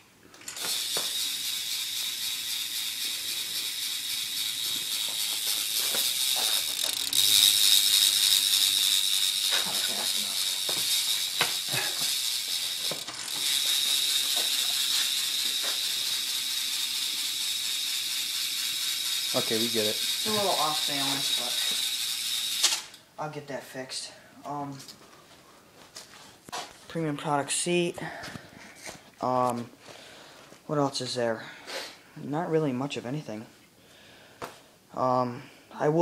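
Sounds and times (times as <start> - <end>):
bicycle hub ratchet buzzing: 0.5 - 23.0.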